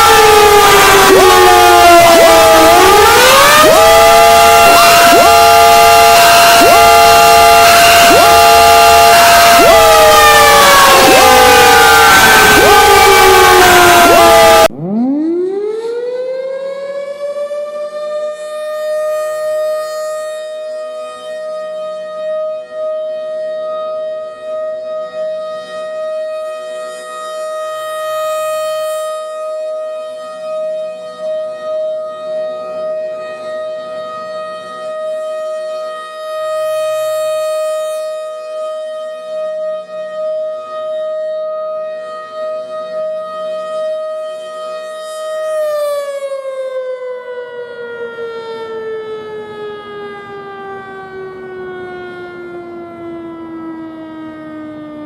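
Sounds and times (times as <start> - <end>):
warning siren steady tone: 0.0 - 55.0.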